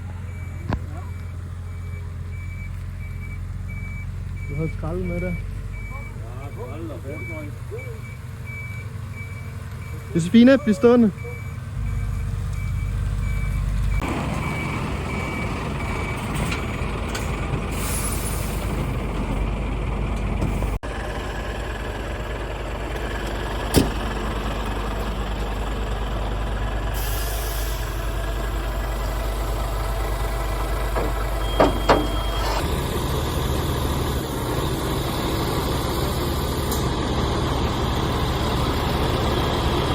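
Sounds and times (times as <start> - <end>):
heavy vehicle engine running: 0.0 - 39.9
reversing alarm beeping: 0.3 - 16.4, 29.2 - 34.3.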